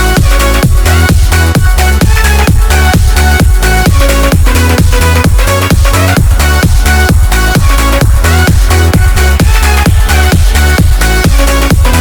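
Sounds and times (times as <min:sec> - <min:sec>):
kick drum beat: 0:00.0 - 0:12.0
synth chords: 0:00.0 - 0:12.0.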